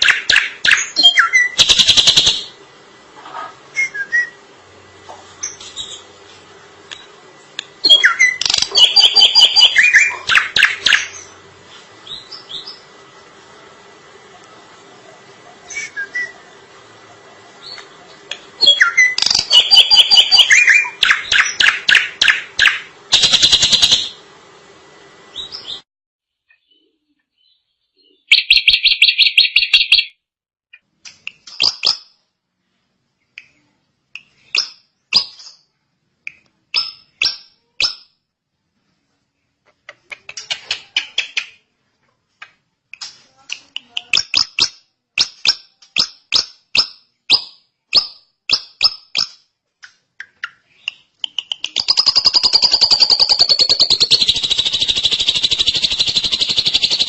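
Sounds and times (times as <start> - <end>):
bird singing rapid notes: 0.0 - 2.6, 7.8 - 11.4, 18.6 - 24.2, 26.5 - 30.2, 50.3 - 57.0.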